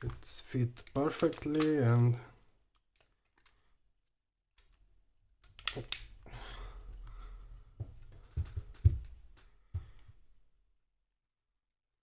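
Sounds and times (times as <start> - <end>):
sharp clicks: 0.8 - 2.0, 5.4 - 6.2.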